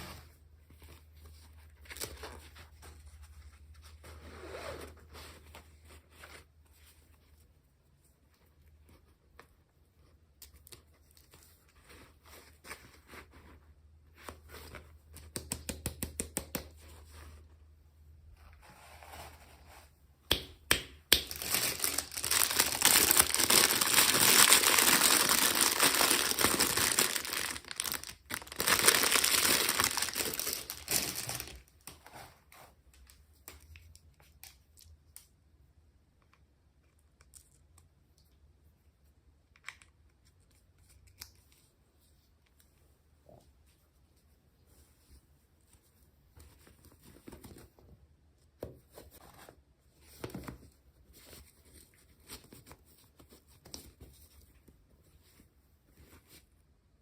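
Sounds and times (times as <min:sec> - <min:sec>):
packaging tearing and crinkling: 0:21.2 - 0:31.7.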